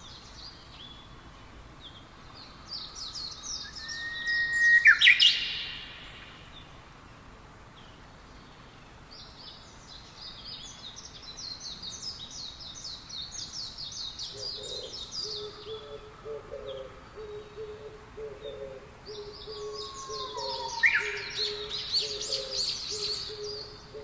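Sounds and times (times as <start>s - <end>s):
songbirds chirping: 0.0s - 24.0s.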